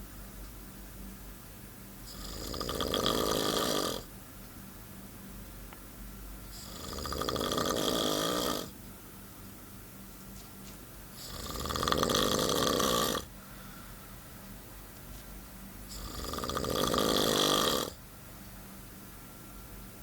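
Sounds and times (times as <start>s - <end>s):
long snores: 2.1s - 4.1s, 6.5s - 8.8s, 11.2s - 13.3s, 15.9s - 18.0s.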